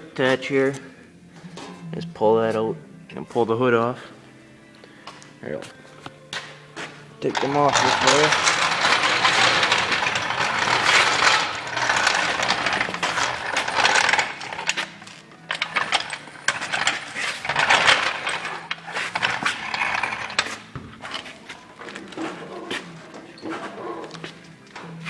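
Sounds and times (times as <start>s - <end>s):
metal tools clicking and clinking: 7.2s - 22.4s.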